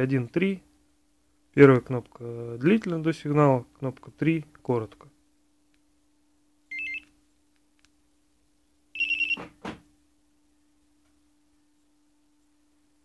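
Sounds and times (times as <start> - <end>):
faint steady hum: 0.0 - 13.0
two-tone chirp: 9.0 - 9.4.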